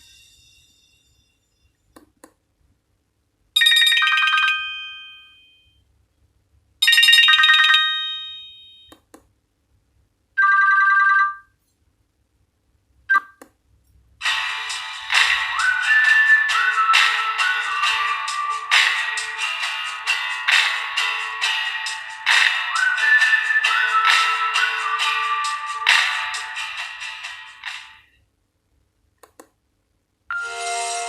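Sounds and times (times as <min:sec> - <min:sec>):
ringtone melody: 0:03.6 - 0:05.7, 0:06.8 - 0:08.9, 0:14.2 - 0:28.1, 0:30.3 - 0:31.0
soft clicks: 0:29.2 - 0:29.6
phone electronic chime tones: 0:30.3 - 0:30.7.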